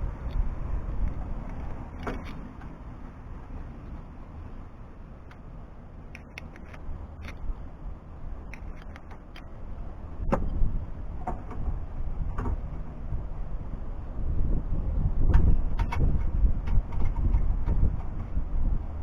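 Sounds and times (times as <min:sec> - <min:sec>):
low handling rumble: 0:00.0 - 0:06.0
light metallic clicks: 0:06.1 - 0:07.5.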